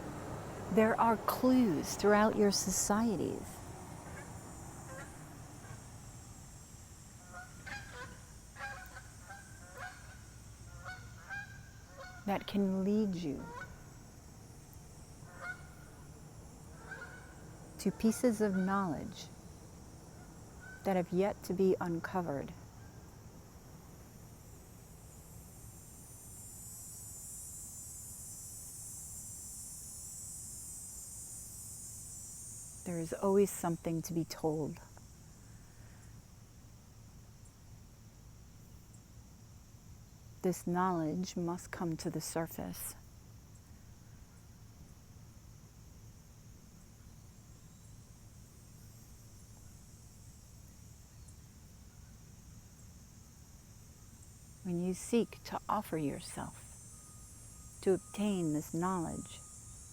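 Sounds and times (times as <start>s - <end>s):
geese honking faintly: 0.0s - 6.0s, 7.2s - 14.0s, 15.2s - 19.4s, 20.1s - 21.0s
insects buzzing chorus: 0.0s - 59.9s.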